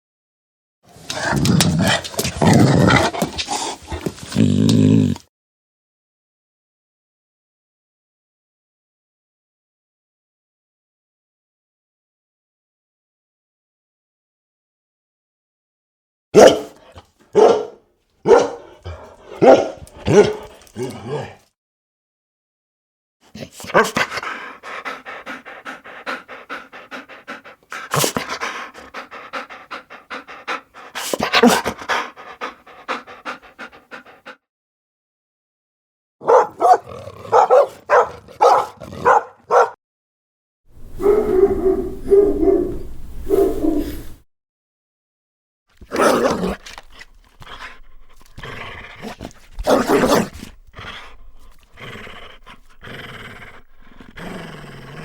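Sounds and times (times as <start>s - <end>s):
dogs making short repeated sounds: 23.3s - 34.4s, 45.8s - 51.8s.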